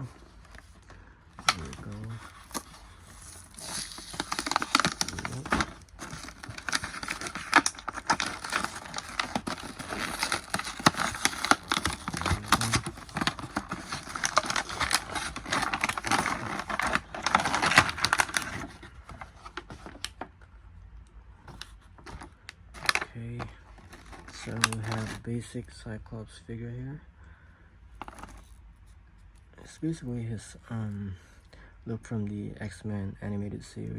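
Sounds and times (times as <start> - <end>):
plastic packaging crinkling: 0.0 - 20.3, 21.5 - 25.3, 28.0 - 28.6.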